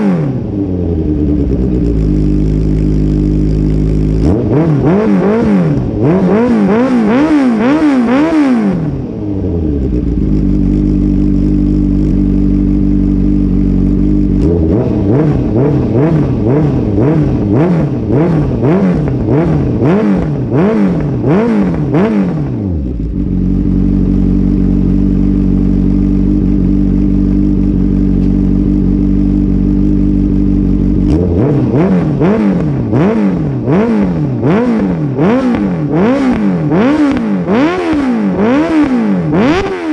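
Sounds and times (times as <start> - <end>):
motorcycle engine revving and idling: 0.0 - 39.9.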